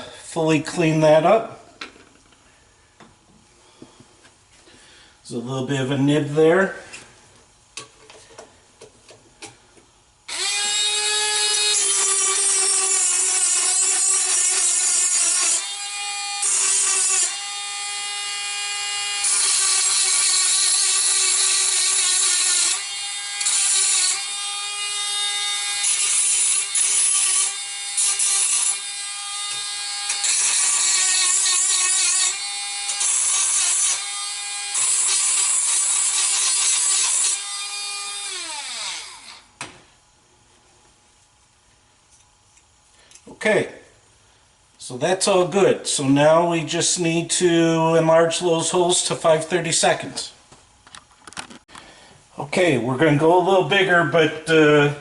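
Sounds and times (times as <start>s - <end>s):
electric power tool grinding: 10.3s - 39.5s.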